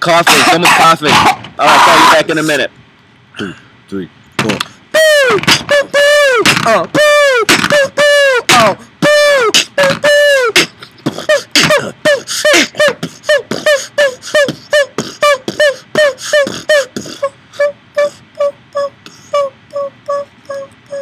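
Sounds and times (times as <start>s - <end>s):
beatboxing sung notes: 0.0s - 2.3s, 4.4s - 21.0s
mouth clicks: 4.4s - 17.3s.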